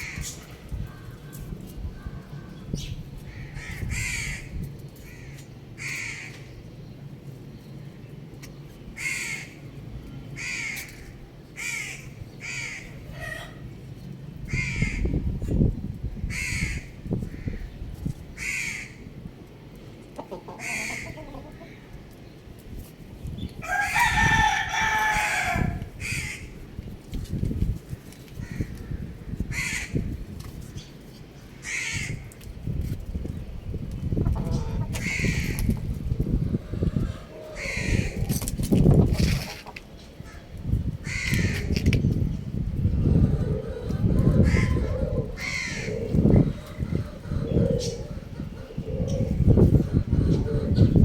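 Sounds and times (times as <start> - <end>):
chickens calling: 10.4 - 13.8, 20.0 - 22.8, 23.5 - 26.6, 34.0 - 51.0
rooster crowing: 23.6 - 25.9.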